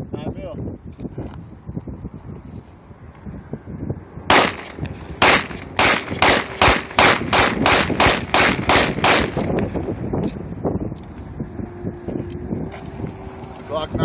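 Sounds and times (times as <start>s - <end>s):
pistol shots: 4.3s - 9.4s.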